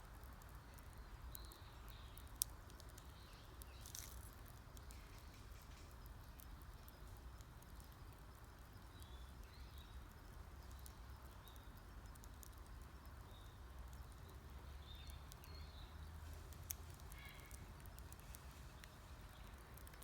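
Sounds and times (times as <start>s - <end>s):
campfire crackling and popping: 0.0s - 20.0s
birds chirping: 8.8s - 20.0s.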